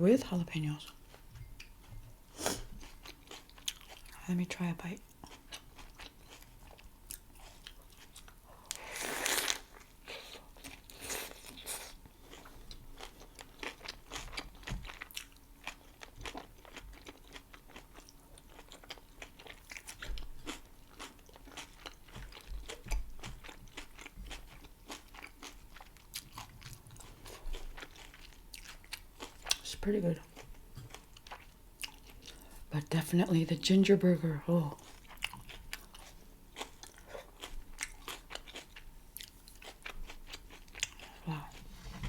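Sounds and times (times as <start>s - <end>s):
close-miked chewing and biting: 0.8s - 4.2s, 5.2s - 29.7s, 30.4s - 32.4s, 34.8s - 41.6s.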